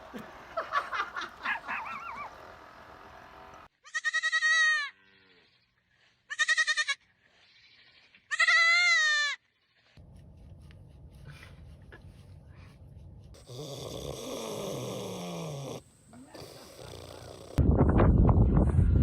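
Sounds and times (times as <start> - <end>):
high quavering bleats: 3.8 - 5.6, 6.3 - 9.4.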